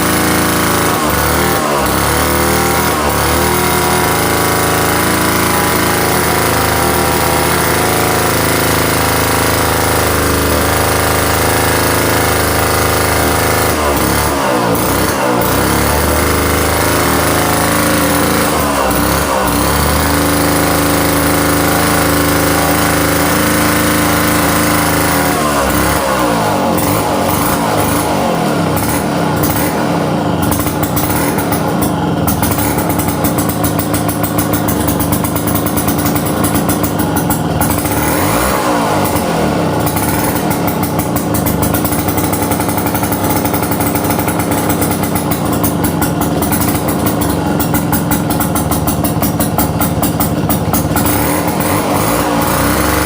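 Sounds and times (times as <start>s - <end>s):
chainsaw engine revving: 0.0s - 53.0s.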